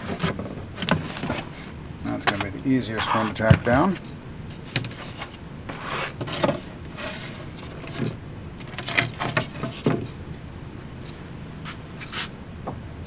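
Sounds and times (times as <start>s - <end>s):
wicker basket rubbing and scraping: 0.0s - 1.6s, 2.8s - 8.2s, 11.6s - 12.3s.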